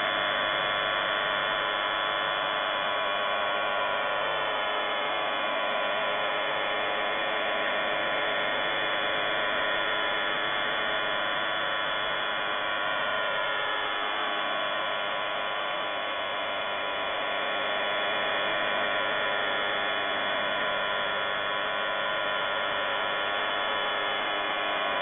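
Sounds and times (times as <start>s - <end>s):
dense buzz of stacked tones: 0.0s - 25.0s.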